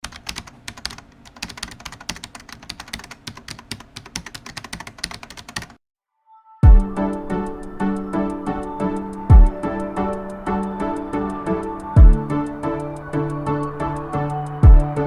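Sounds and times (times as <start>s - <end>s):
typing on a keyboard: 0.0s - 5.8s.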